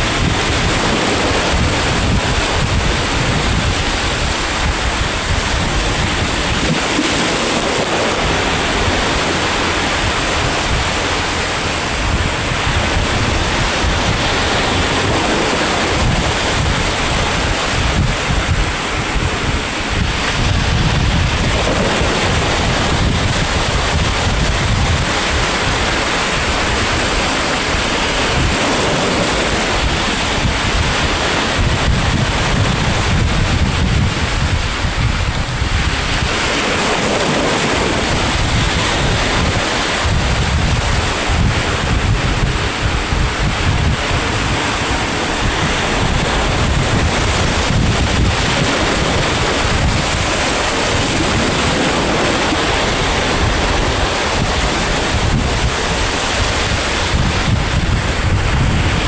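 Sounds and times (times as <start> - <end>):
sea waves breaking on shore: 0.0 - 59.0
wind buffeting microphone: 0.0 - 59.0.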